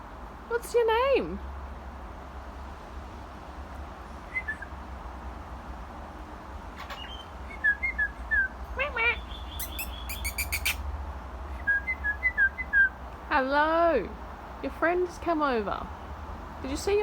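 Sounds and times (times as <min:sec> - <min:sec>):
small birds chirping and trilling: 0:06.7 - 0:10.9
steady low rumble: 0:10.9 - 0:17.0.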